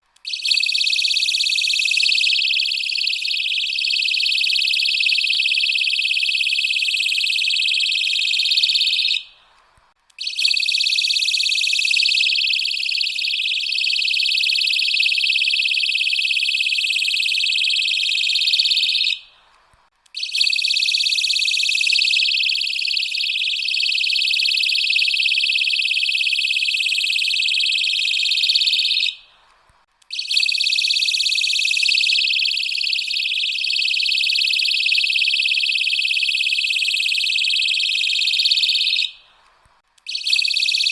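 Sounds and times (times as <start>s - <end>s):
personal alarm high-pitched wail: 0.3s - 9.2s, 10.2s - 19.2s, 20.2s - 29.2s, 30.2s - 39.2s, 40.1s - 40.9s.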